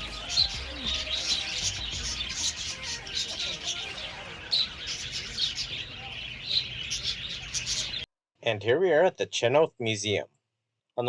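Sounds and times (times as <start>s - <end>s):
many small birds chirping: 0.0s - 8.1s.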